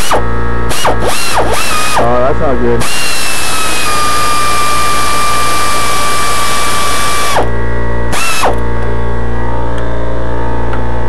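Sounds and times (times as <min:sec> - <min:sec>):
drill trigger blip: 0:00.0 - 0:02.1, 0:02.8 - 0:07.5, 0:08.1 - 0:08.6
power drill whining: 0:00.0 - 0:02.2, 0:02.8 - 0:07.5, 0:08.1 - 0:08.6
steady low hum: 0:00.0 - 0:11.0.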